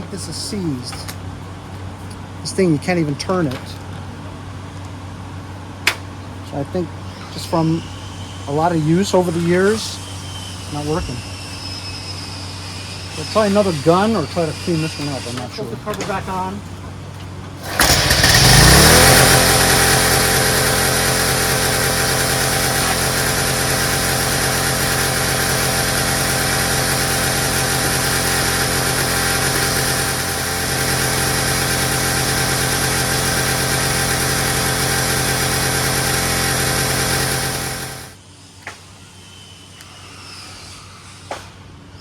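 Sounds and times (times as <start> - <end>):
small engine revving and running: 17.6 - 38.2.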